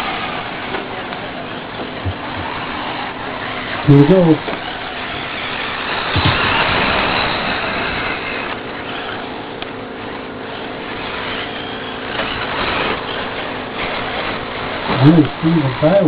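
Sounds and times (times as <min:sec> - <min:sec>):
radio-controlled trucks running: 0:00.0 - 0:16.0.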